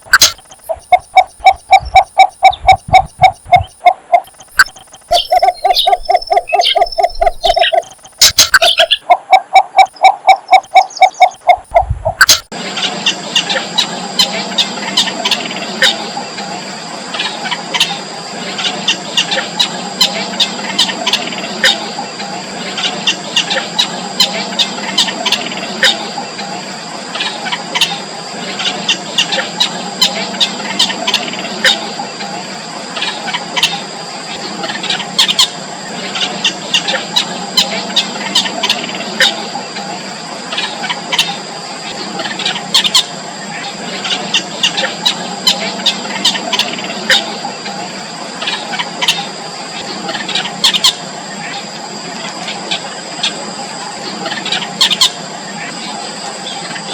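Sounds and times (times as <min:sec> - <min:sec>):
bird chicks squeaky calls: 0:00.0 - 0:12.5
steady high-pitched whine: 0:00.0 - 0:56.9.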